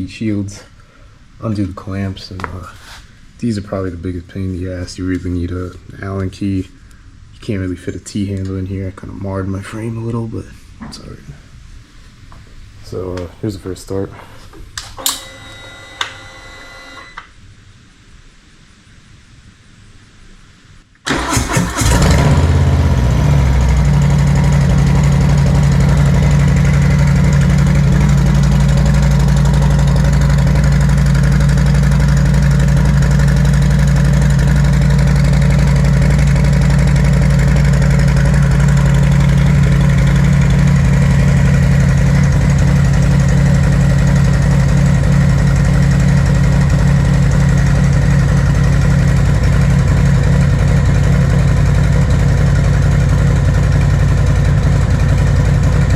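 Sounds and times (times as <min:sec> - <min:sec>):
motorcycle engine idling: 0:21.2 - 0:55.9.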